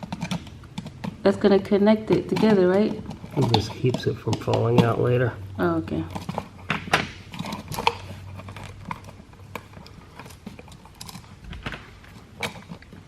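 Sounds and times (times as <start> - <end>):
hand tools clicking and tapping: 0.0 - 5.3.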